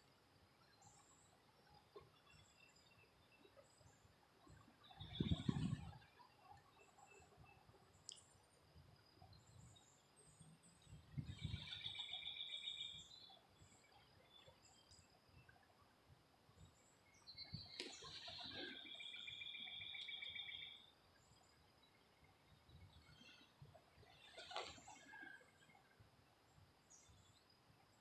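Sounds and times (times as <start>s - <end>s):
faint high bird chirps: 0.6s - 8.4s, 9.0s - 15.7s, 16.6s - 26.0s
songbird rapid trill: 9.2s - 15.4s, 16.8s - 25.4s.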